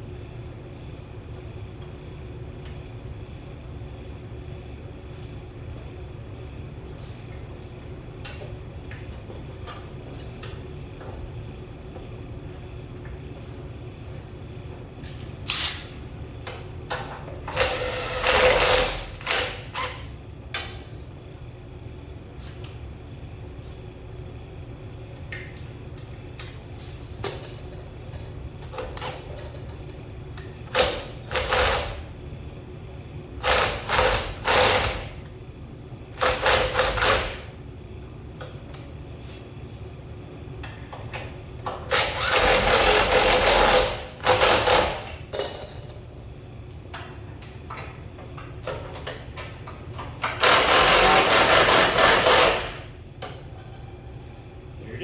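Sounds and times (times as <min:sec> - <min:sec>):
handheld power tool bursts: 0:41.9 - 0:45.0, 0:50.4 - 0:52.8.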